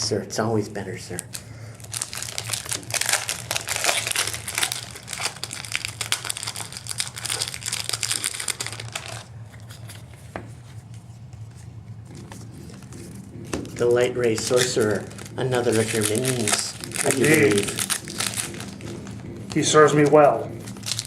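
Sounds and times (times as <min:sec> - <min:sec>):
foil wrappers crinkling and tearing: 0:01.1 - 0:10.1, 0:13.7 - 0:21.0.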